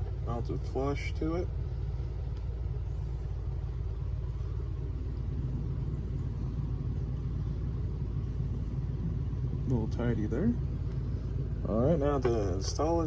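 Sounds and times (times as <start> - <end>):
low background rumble: 0.0 - 13.0.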